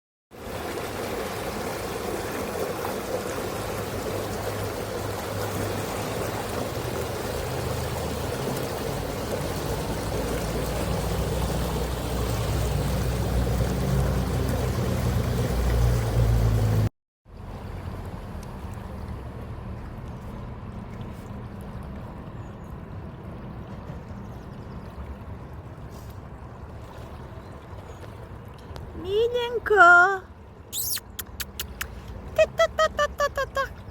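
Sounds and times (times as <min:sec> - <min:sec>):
spring water flowing: 0:00.3 - 0:18.3.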